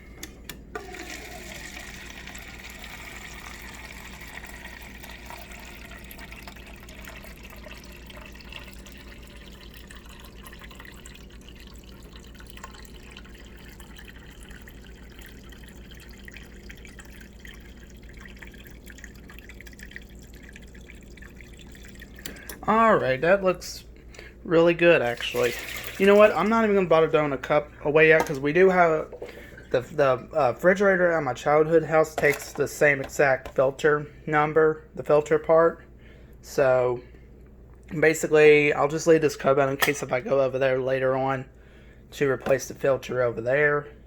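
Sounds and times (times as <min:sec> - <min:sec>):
water running into plastic cup: 0:00.8 - 0:22.6, 0:25.0 - 0:27.2.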